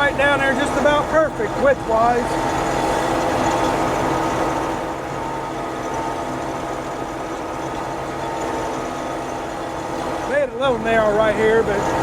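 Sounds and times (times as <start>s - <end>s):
combine harvester droning: 0.0s - 12.0s.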